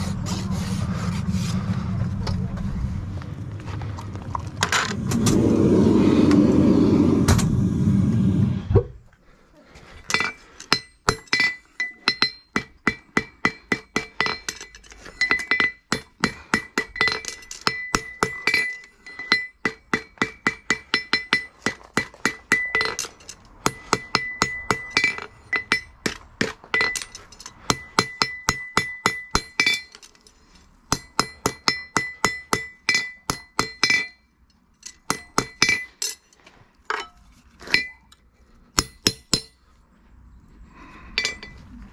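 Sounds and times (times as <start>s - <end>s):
loud rushing noise: 0.0s - 8.9s
hammer ringing on anvil: 23.6s - 26.0s.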